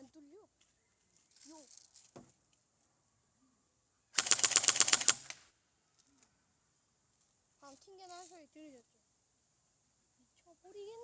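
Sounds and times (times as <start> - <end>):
airsoft gun full-auto burst: 4.2 - 5.4.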